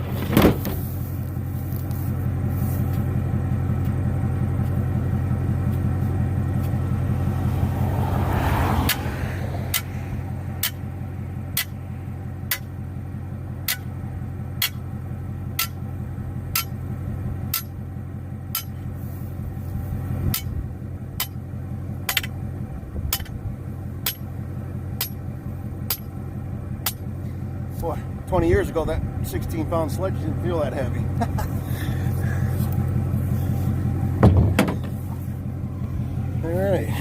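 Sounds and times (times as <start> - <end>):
low engine hum: 0.0 - 37.0
sledgehammer strikes: 16.6 - 16.8, 17.5 - 17.8, 21.2 - 21.4, 22.0 - 22.4, 23.0 - 23.4, 24.0 - 24.3, 25.0 - 25.3, 25.9 - 26.2, 26.8 - 27.0, 34.2 - 35.1.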